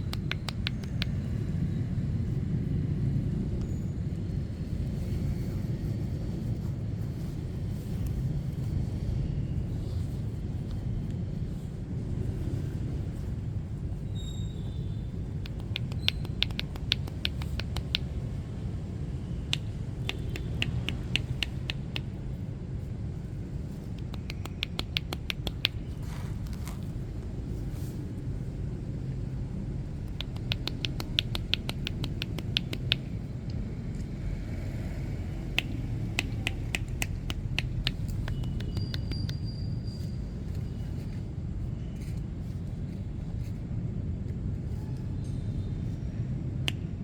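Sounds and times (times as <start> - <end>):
hands tapping on a back: 0.0 - 1.4, 15.4 - 18.3, 19.5 - 22.2, 23.9 - 26.9, 30.0 - 33.2, 35.4 - 39.4
low street rumble: 0.0 - 47.0.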